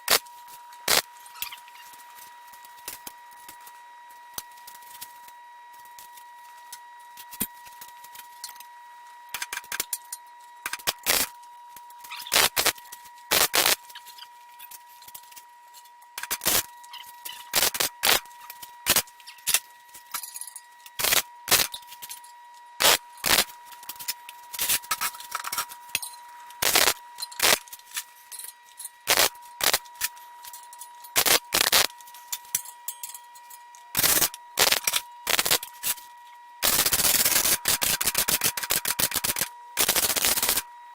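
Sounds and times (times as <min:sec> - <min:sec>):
arc welding crackling: 0:00.0 - 0:00.2, 0:00.8 - 0:02.0, 0:10.6 - 0:11.3, 0:12.0 - 0:14.8, 0:16.2 - 0:19.6, 0:20.9 - 0:22.0, 0:22.8 - 0:25.8, 0:26.5 - 0:28.0, 0:29.1 - 0:30.2, 0:31.2 - 0:32.1, 0:34.0 - 0:36.0, 0:36.6 - 0:40.7.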